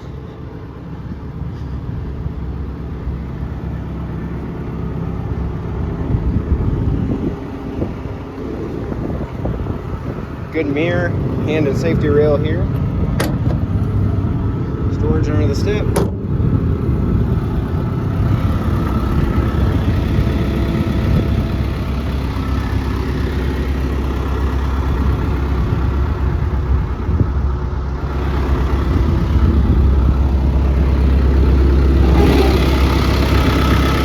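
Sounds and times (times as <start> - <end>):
diesel engine idling: 0.0 - 34.0.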